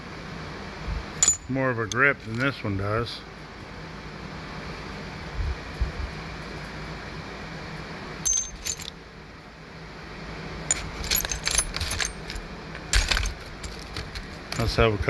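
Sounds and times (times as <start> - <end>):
small steel tools clinking: 1.2 - 2.5, 8.3 - 8.9, 10.7 - 14.8.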